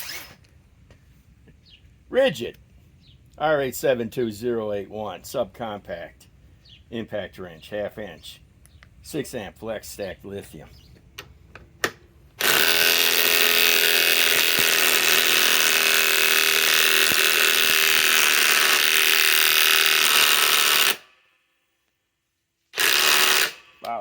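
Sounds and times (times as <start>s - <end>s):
impact wrench hammering: 11.2s - 21.0s, 22.8s - 24.0s.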